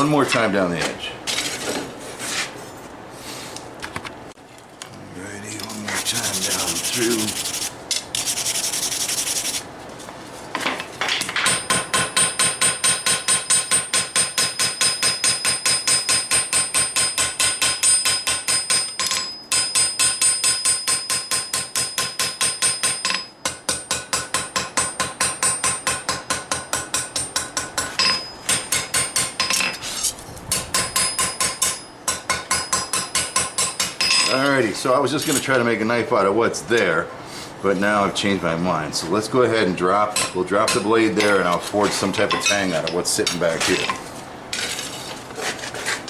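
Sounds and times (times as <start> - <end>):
hammer ringing on anvil: 11.5 - 29.5, 30.8 - 34.4.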